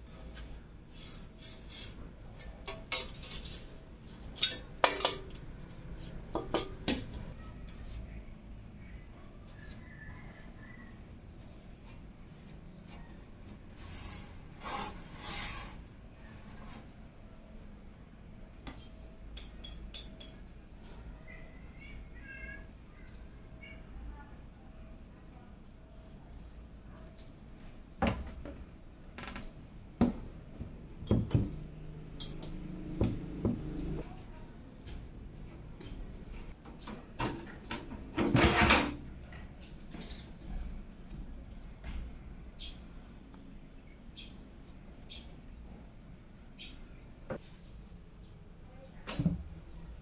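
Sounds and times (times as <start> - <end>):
rubbing sliding sounds: 13.7 - 16.9.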